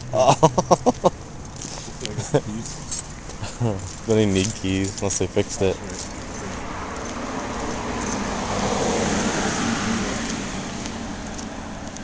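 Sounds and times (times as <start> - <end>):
car driving past: 5.6 - 12.0.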